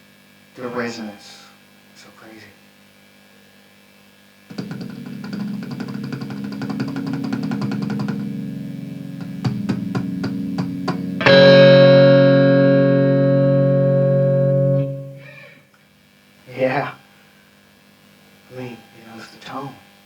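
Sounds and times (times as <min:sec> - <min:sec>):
distorted electric guitar chords: 0:04.5 - 0:15.6.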